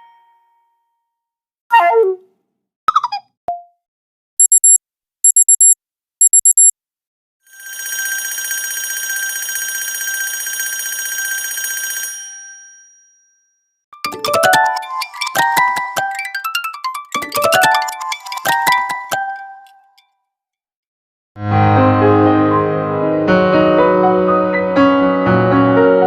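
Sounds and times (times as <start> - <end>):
high-pitched beeping: 4.4 - 6.7.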